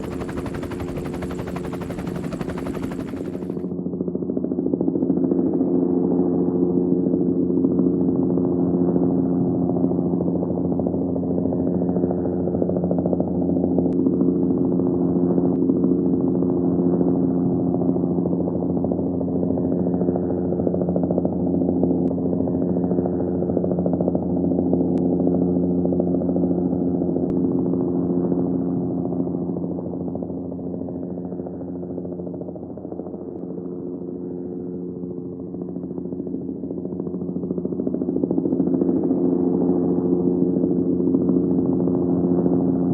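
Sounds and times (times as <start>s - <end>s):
helicopter rotor beat: 0.0s - 4.0s, 22.3s - 42.9s
helicopter engine drone: 0.0s - 4.8s, 15.8s - 42.9s.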